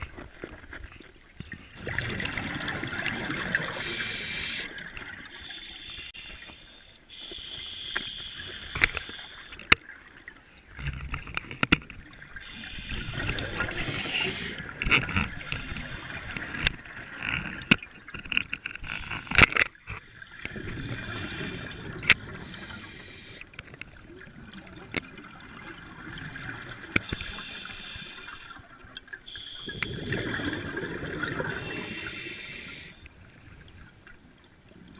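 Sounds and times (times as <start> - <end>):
bubbling underwater: 1.8 - 3.8, 29.7 - 31.9
diver breathing through regulator: 3.7 - 9.6, 12.4 - 16.7, 20.2 - 23.5, 27.0 - 28.6, 29.3 - 33.1.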